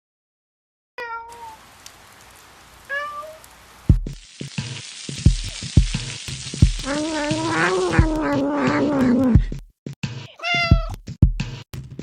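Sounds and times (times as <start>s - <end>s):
steady hiss: 1.3s - 8.2s.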